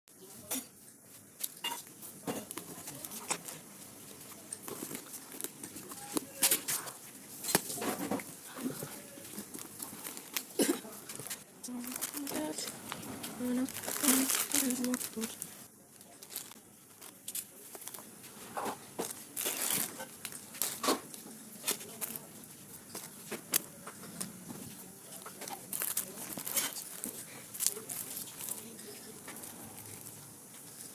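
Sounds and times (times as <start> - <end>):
packaging crinkling: 2.0 - 30.9.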